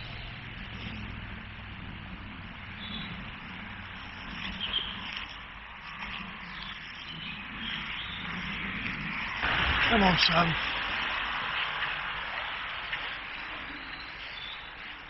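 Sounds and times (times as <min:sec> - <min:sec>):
low rumble: 0:00.0 - 0:15.0
steady hiss: 0:00.8 - 0:15.0
faint high bird chirps: 0:04.3 - 0:05.2.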